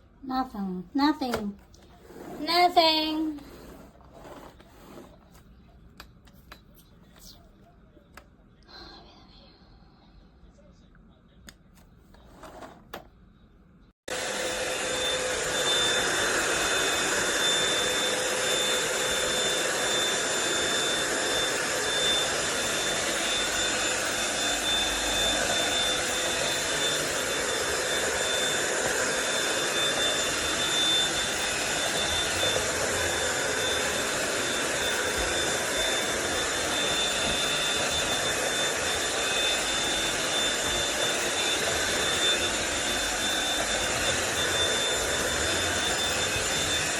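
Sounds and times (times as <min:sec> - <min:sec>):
vacuum cleaner motor whining: 0:01.2 - 0:05.2, 0:14.1 - 0:46.9.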